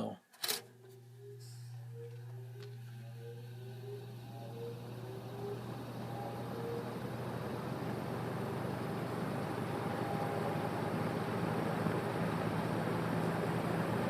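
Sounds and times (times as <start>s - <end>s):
box fan motor humming: 0.7s - 14.0s
fan blades rushing air: 3.1s - 14.0s.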